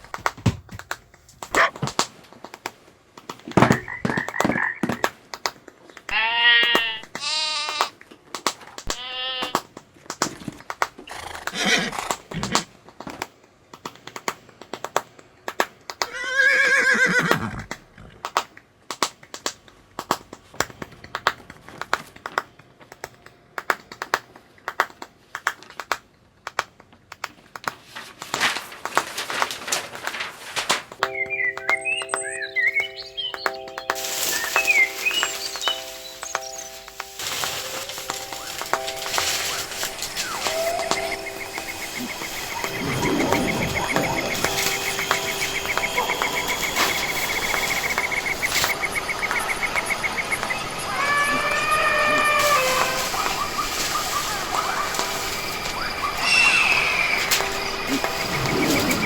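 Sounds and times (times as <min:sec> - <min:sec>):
animal cries: 0:06.1 - 0:07.9, 0:08.9 - 0:09.6, 0:16.1 - 0:17.6, 0:40.3 - 0:41.3, 0:50.9 - 0:55.0, 0:55.8 - 0:57.3.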